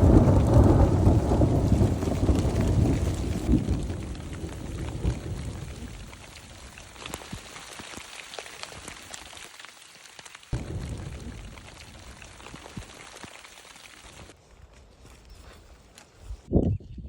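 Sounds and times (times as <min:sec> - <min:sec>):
thunder rumbling: 0:00.0 - 0:07.7, 0:10.5 - 0:14.3
rain hissing: 0:00.0 - 0:14.4
sharp ticks of raindrops: 0:00.0 - 0:14.4.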